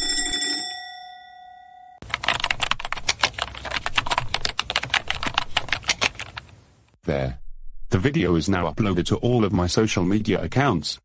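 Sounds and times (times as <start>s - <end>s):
ringing chime tone: 0.0s - 2.0s
fast typing on keyboard: 2.0s - 6.6s.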